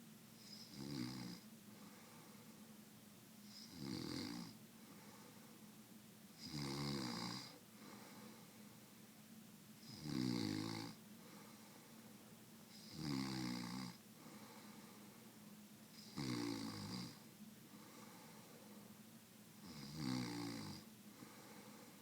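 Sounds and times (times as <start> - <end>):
person snoring: 16.0 - 17.2, 19.7 - 20.8.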